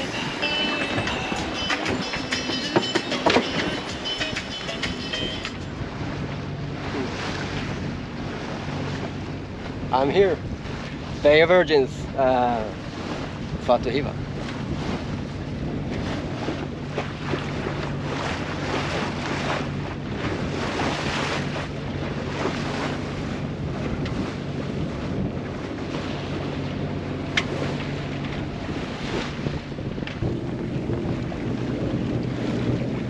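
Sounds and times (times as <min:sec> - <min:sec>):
water washing along hull: 0:00.0 - 0:33.0
wind gusting across microphone: 0:05.6 - 0:33.0
steady low drone: 0:23.0 - 0:33.0.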